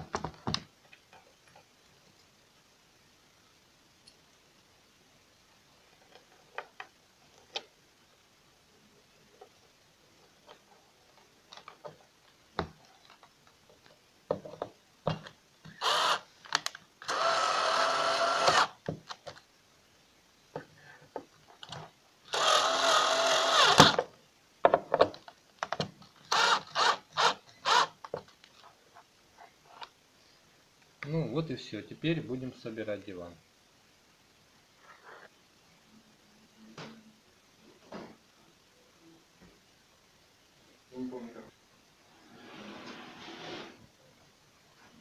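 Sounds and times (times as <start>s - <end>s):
cordless drill driving screws: 15.7s - 16.2s, 17.0s - 18.8s, 22.3s - 24.0s, 26.3s - 28.0s.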